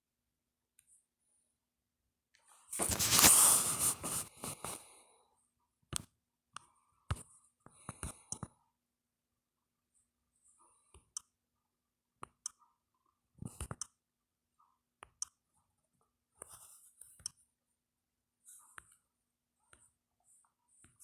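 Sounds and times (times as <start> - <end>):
soft rustles: 2.7 - 4.8.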